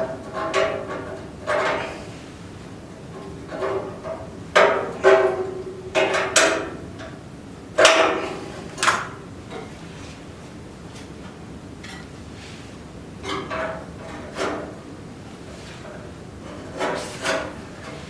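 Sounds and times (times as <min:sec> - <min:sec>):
sheet metal knocking and clanking: 0:03.2 - 0:07.2.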